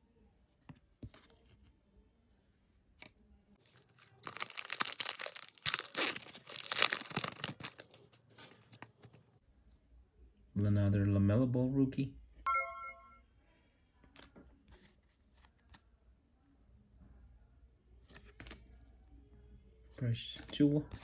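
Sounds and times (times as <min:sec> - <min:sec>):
wrapper tearing and crinkling: 0:03.6 - 0:08.1.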